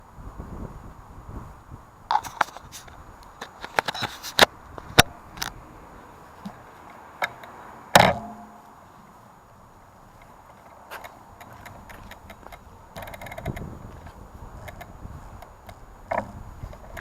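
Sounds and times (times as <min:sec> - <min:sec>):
bicycle wheel clicking and knocking: 0:11.0 - 0:17.0.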